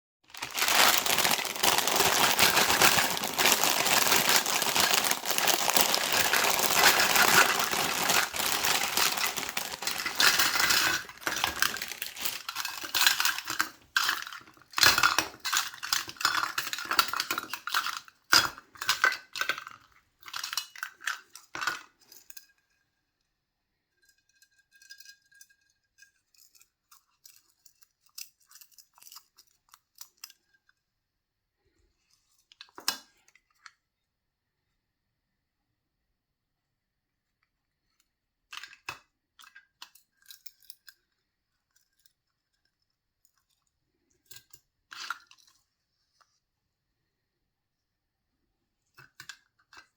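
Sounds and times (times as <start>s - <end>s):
packaging crinkling and tearing: 0.3s - 13.6s.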